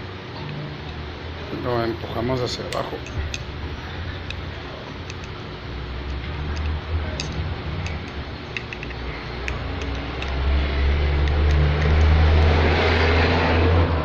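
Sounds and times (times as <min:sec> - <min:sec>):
low engine rumble: 0:00.0 - 0:14.0
screwdriver metallic clicks: 0:02.7 - 0:03.5, 0:04.2 - 0:05.4, 0:06.0 - 0:10.6, 0:11.2 - 0:12.6.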